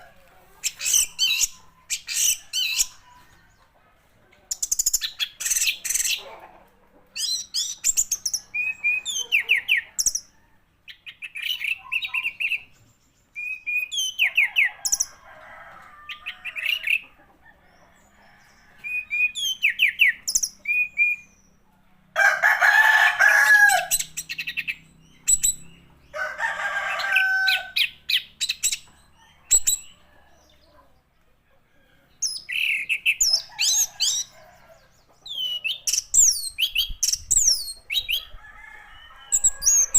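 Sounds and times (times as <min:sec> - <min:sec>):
bird singing whistles and chirps: 0:13.3 - 0:14.3, 0:18.8 - 0:21.4, 0:24.0 - 0:25.8, 0:35.2 - 0:38.3.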